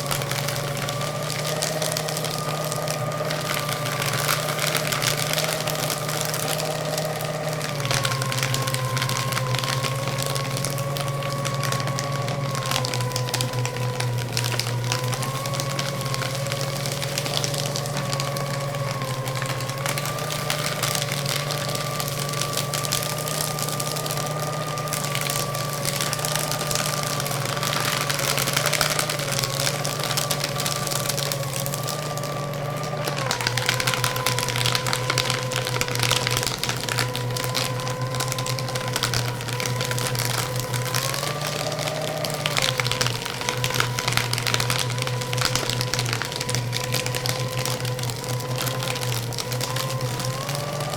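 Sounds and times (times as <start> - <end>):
paper being shredded: 0.0 - 50.9
paper shredder motor whine: 0.0 - 50.9.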